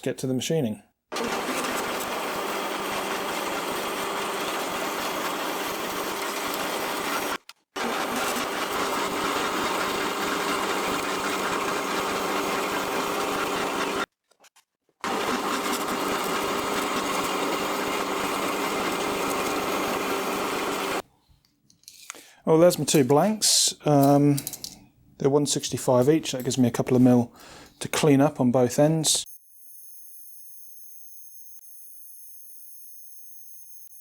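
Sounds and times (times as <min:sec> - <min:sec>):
bandsaw cutting steel: 0:01.1 - 0:14.1, 0:15.0 - 0:21.0.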